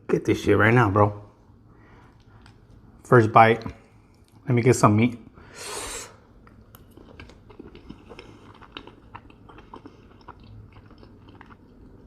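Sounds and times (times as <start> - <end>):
wet chewing mouth smacks: 6.4 - 12.0.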